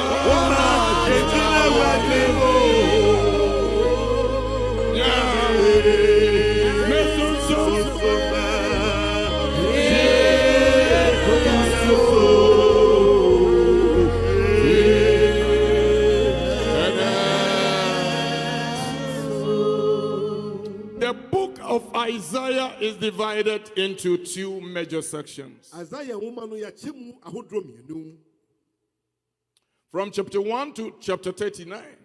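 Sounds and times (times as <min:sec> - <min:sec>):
low bass notes: 0:00.0 - 0:18.7
voices singing worship song: 0:00.0 - 0:23.9.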